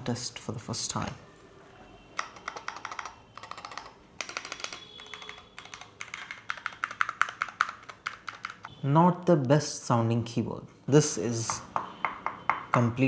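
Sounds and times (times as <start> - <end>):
keyboard typing: 2.1 - 8.7.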